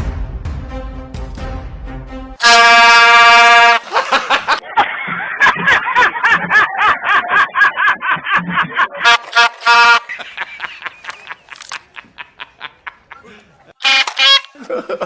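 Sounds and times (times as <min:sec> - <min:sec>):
truck air horn blasting: 0:02.4 - 0:04.0, 0:09.0 - 0:10.1, 0:13.8 - 0:14.6.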